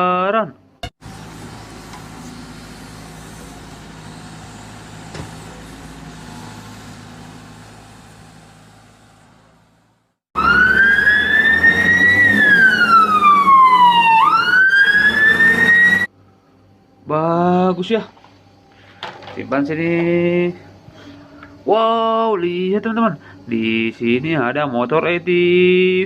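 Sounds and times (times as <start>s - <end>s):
fire engine siren wailing: 10.4s - 16.1s.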